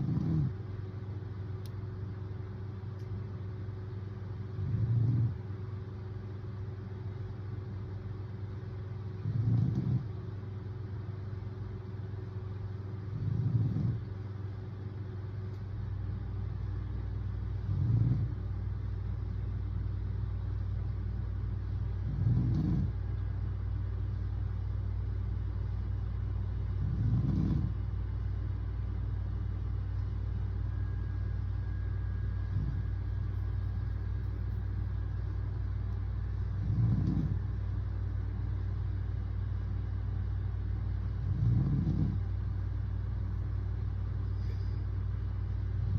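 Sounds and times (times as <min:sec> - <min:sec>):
man snoring: 0:00.0 - 0:00.5, 0:13.1 - 0:14.0, 0:17.6 - 0:18.4, 0:41.2 - 0:42.2
steady low hum: 0:00.0 - 0:45.9.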